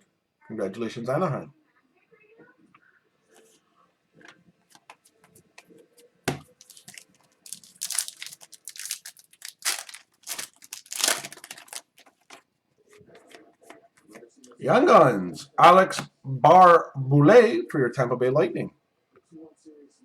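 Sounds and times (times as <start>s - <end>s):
card pack wrapper tearing: 6.6s - 12.1s.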